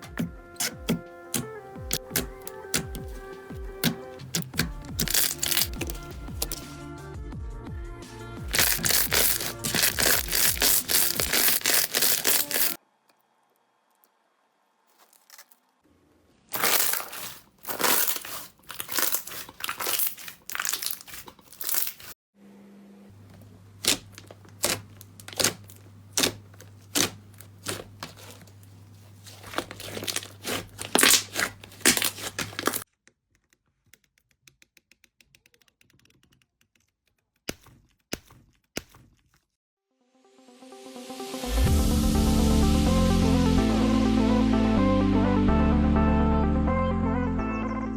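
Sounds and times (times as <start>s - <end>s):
slime crackling and popping: 0.1s - 6.6s, 8.5s - 12.8s, 16.5s - 22.1s, 23.8s - 28.5s, 29.2s - 32.9s.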